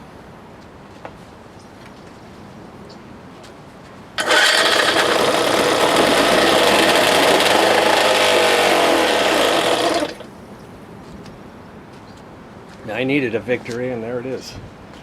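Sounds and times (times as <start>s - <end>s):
outboard motor running: 4.2s - 10.4s.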